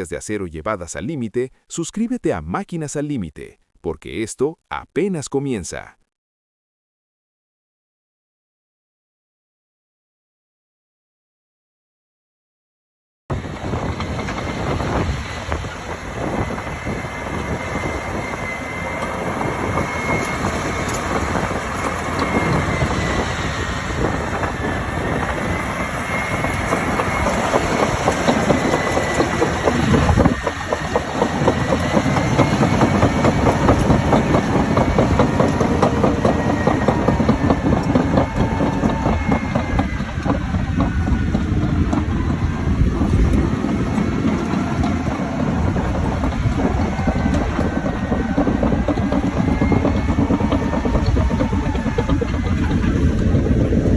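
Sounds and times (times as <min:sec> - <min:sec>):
diesel engine running under load: 0:13.3 - 0:53.9
steel tracks clanking: 0:13.3 - 0:53.9.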